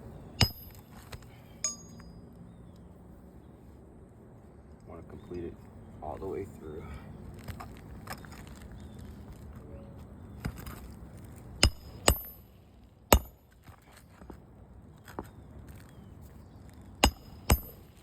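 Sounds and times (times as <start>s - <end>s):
metallic hand tool strikes: 0.4s - 0.8s, 1.6s - 2.2s, 11.6s - 12.4s, 13.1s - 13.4s, 17.0s - 17.8s.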